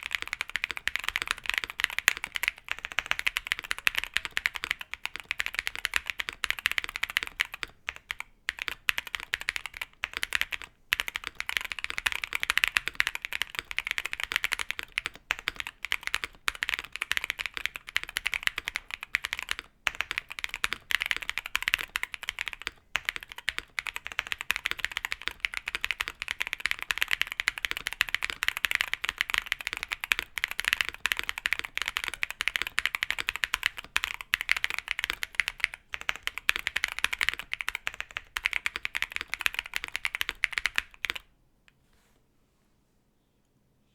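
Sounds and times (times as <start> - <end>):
mechanical keyboard typing: 0.0 - 41.3.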